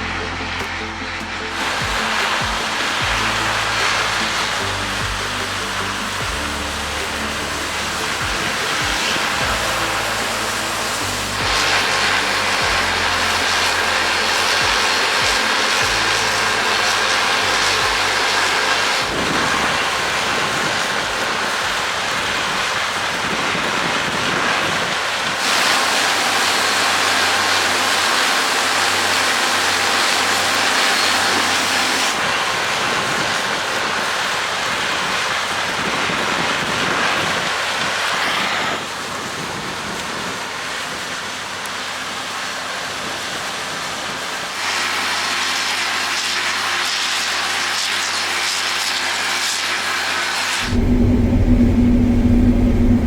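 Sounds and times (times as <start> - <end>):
combine harvester running: 0.0 - 24.2, 47.7 - 53.0.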